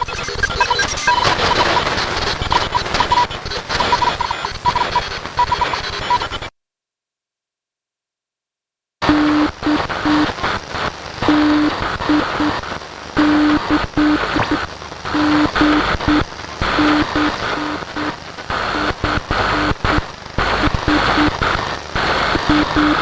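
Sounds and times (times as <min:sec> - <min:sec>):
crackling static: 0:00.0 - 0:06.6, 0:09.0 - 0:23.0
morse code beeps: 0:09.0 - 0:10.4, 0:11.2 - 0:12.6, 0:13.2 - 0:21.4, 0:22.3 - 0:23.0.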